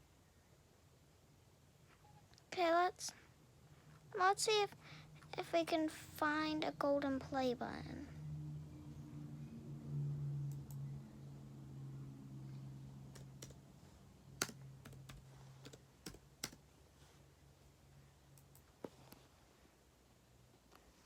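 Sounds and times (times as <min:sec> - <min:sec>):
low steady hum: 0:00.0 - 0:21.0
keyboard typing clicks: 0:14.4 - 0:16.6.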